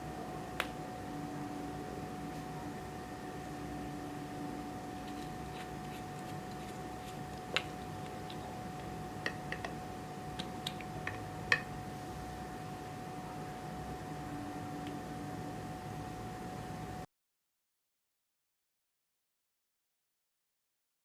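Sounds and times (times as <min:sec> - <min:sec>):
steady background hum: 0:00.0 - 0:17.1.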